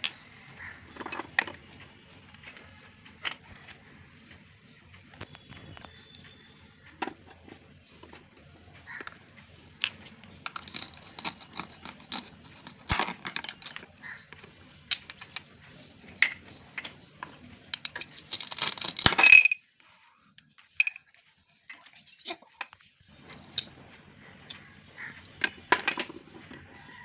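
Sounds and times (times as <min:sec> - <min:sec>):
plastic toy pieces clattering: 0:10.5 - 0:13.9, 0:17.7 - 0:19.6.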